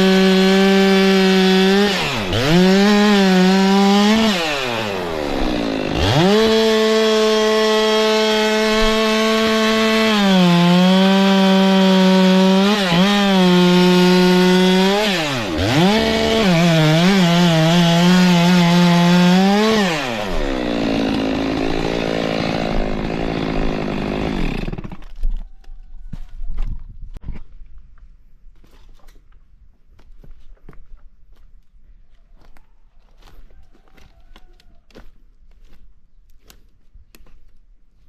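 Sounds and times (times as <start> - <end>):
chainsaw cutting wood: 0.0 - 25.3.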